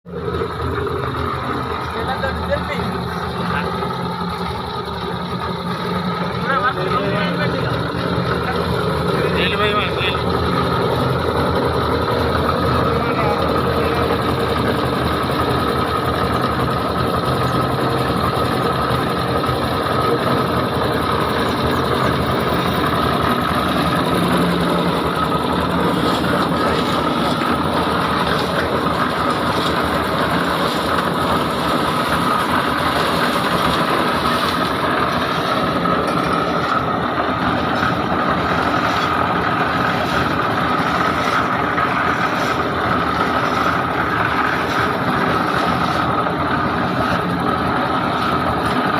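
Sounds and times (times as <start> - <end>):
engine droning with whine: 0.1 - 48.9.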